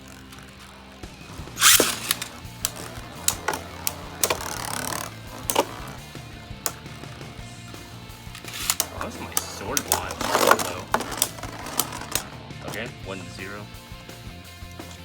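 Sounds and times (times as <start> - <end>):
background music: 0.0 - 15.0
spinning tops clashing: 1.6 - 6.8, 8.3 - 12.3.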